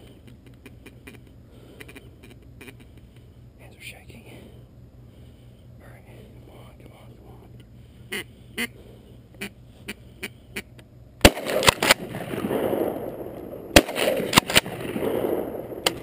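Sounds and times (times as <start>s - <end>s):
shotgun shots: 11.2s - 16.0s.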